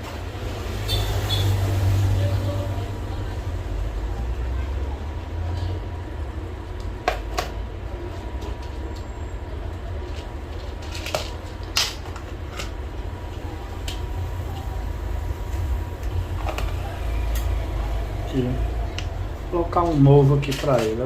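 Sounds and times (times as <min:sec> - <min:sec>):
low hum: 0:12.5 - 0:21.0
faint whine: 0:12.9 - 0:21.0.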